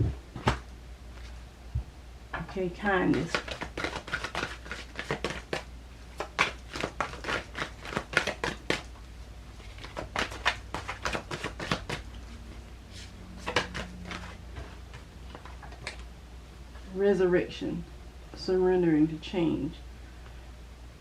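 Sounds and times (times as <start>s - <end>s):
low steady hum: 0.0s - 21.0s
playing cards shuffling: 0.3s - 1.4s, 2.8s - 9.0s, 9.6s - 16.1s.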